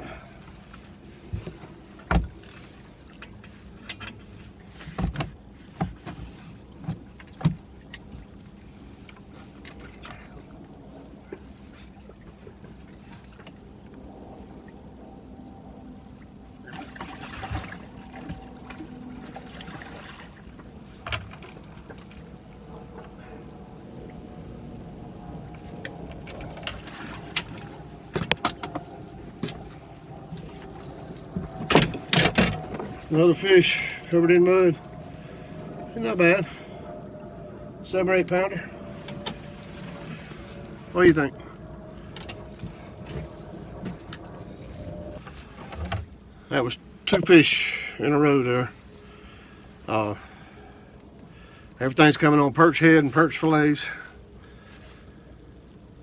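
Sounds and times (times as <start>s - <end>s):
steady low hum: 0.0s - 56.0s
steady low rumble: 6.6s - 56.0s
gear clattering and rattling: 25.6s - 34.9s, 42.0s - 46.1s.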